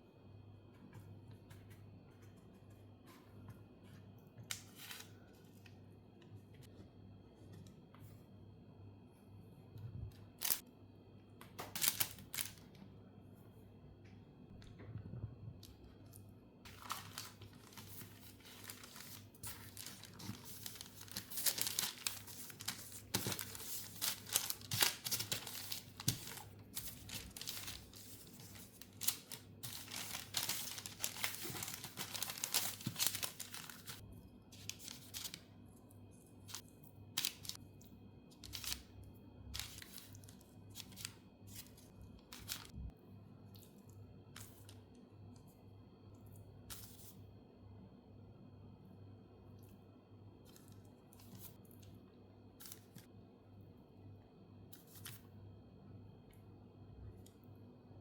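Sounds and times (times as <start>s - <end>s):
crinkling and rustling: 15.6s - 35.5s.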